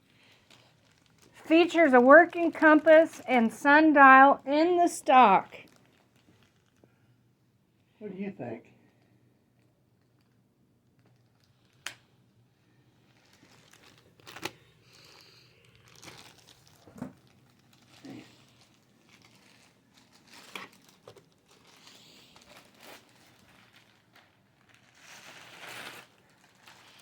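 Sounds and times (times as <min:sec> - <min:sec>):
packaging crinkling and rustling: 0:00.0 - 0:03.2, 0:05.0 - 0:07.0, 0:09.9 - 0:27.0.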